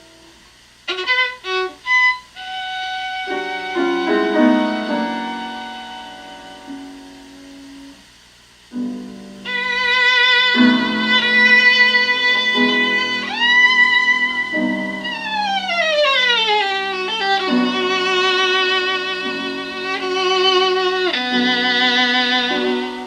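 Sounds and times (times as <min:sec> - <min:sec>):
piano chords: 0:00.0 - 0:00.4, 0:02.5 - 0:08.0, 0:08.7 - 0:23.0
violin with vibrato: 0:00.9 - 0:07.0, 0:09.4 - 0:23.0.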